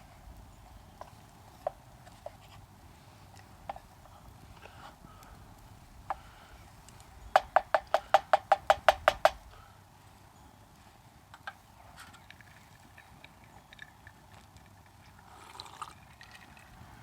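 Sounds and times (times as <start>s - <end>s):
sharp clicks: 6.9s - 9.5s.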